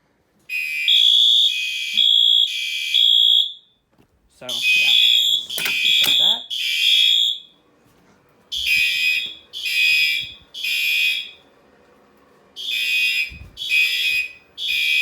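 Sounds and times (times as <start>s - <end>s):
fire alarm horn blasts: 0.5s - 3.8s, 4.5s - 7.6s, 8.6s - 11.4s, 12.6s - 15.0s.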